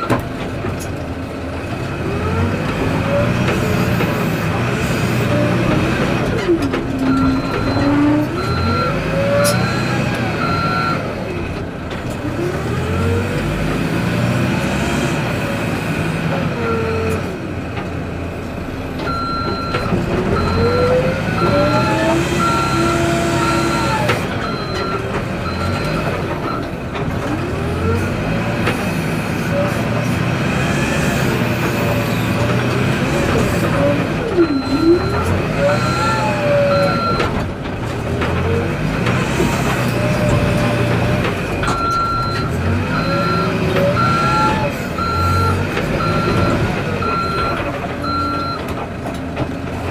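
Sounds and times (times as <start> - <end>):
backhoe diesel engine under load: 0.0 - 49.9
reversing alarm beeps: 7.1 - 11.0, 19.1 - 26.6, 34.4 - 37.3, 41.7 - 48.6.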